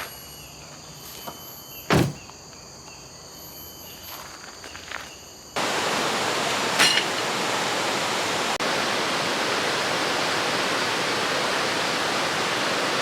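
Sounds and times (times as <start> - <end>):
insects chirping: 0.0 - 11.2
loud thump: 1.9 - 2.3
rushing river water: 5.6 - 13.0.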